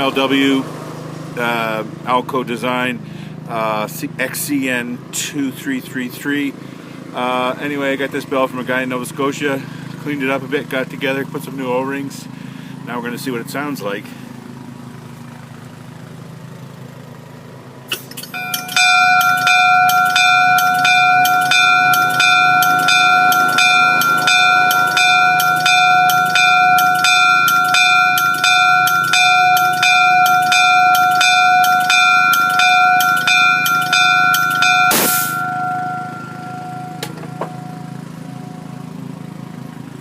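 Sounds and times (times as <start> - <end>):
locomotive bell ringing: 18.1 - 39.8
steady hum: 18.2 - 39.0.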